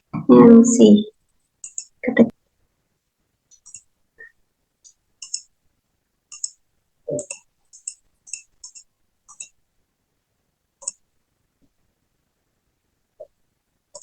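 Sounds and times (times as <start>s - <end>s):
keyboard and mouse clicking: 1.6s - 2.0s, 3.5s - 3.9s, 4.8s - 5.5s, 6.3s - 9.6s, 10.8s - 11.0s.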